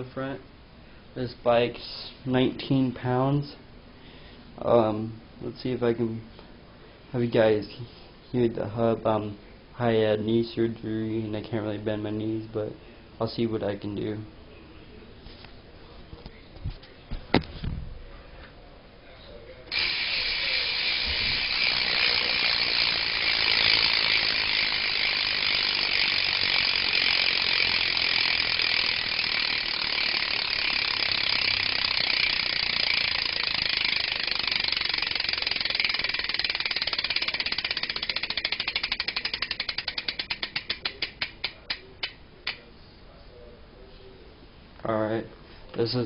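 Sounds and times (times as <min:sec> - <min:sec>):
bicycle freewheel ratchet clicking: 0:19.7 - 0:42.6.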